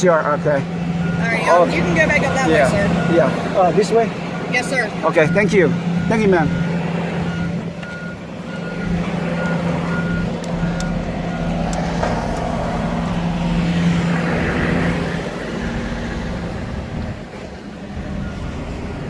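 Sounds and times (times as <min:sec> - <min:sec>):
vehicle engine running: 0:00.0 - 0:19.0
backup alarm beeping: 0:01.0 - 0:13.5, 0:17.8 - 0:19.0.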